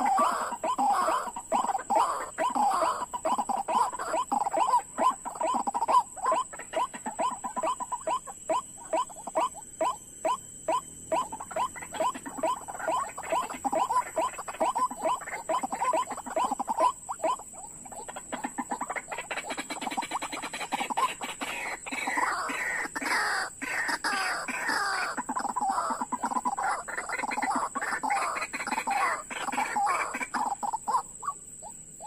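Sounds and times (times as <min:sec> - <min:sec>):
bird croaking calls: 0:00.0 - 0:32.0.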